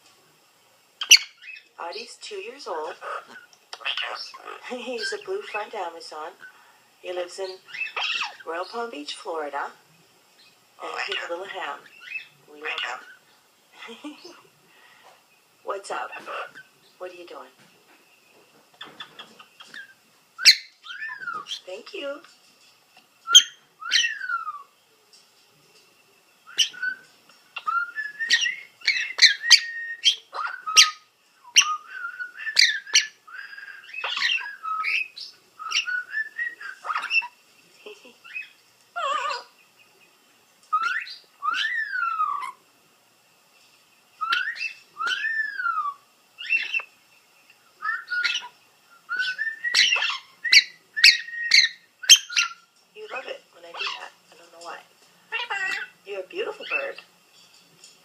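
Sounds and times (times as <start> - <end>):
parrot whistling and chirping: 1.0 - 1.6, 7.7 - 8.5, 18.9 - 21.7, 23.2 - 24.7, 26.4 - 37.4, 40.7 - 42.6, 44.2 - 46.9, 47.8 - 54.2.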